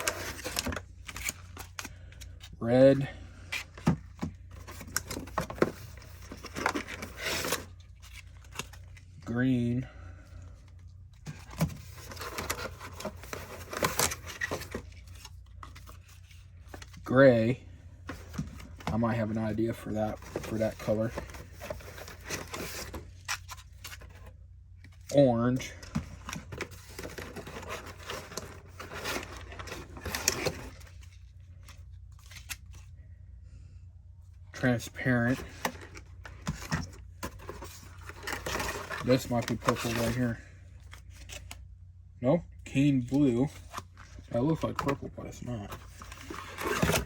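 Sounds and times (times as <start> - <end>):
packaging rustling: 11.2 - 17.0, 18.0 - 24.3, 25.8 - 31.2, 35.3 - 41.6, 43.6 - 47.0
plastic packaging rustling: 25.8 - 31.3, 43.6 - 47.0.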